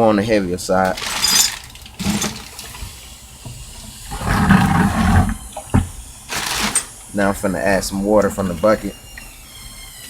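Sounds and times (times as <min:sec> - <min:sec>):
liquid pouring into a bucket: 0:00.8 - 0:05.4, 0:06.3 - 0:09.3.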